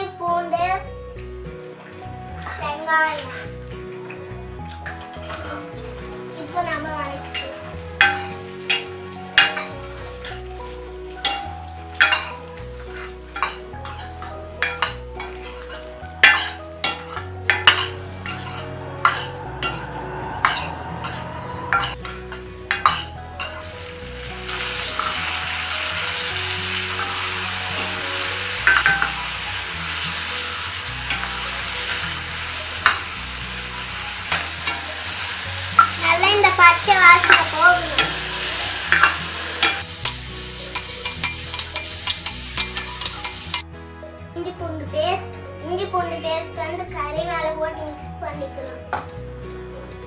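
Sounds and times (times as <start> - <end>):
food sizzling in hot oil: 1.2 - 43.6
spoon knocking against pan: 39.8 - 43.6.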